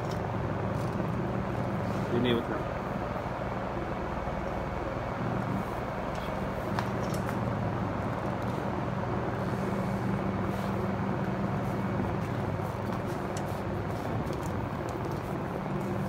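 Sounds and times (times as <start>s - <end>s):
low mechanical hum: 0.0s - 16.0s.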